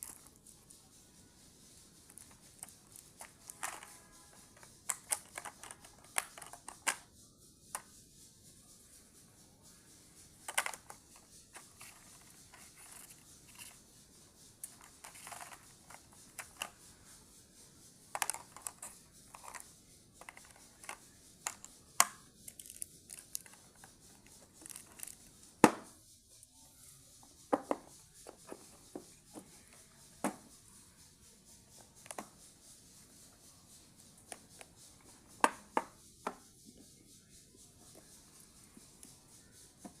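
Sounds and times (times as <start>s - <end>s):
packaging clicks and taps: 2.1s - 7.1s, 10.4s - 13.8s, 14.6s - 16.8s, 18.1s - 25.8s, 34.3s - 36.4s.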